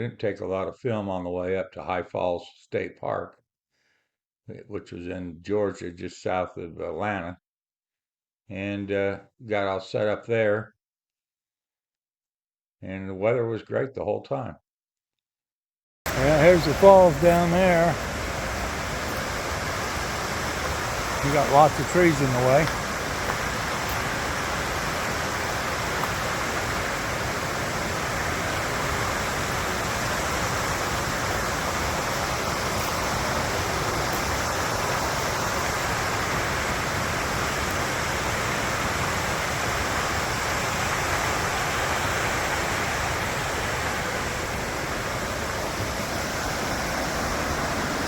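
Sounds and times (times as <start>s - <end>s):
waterfall rushing: 16.1s - 48.0s.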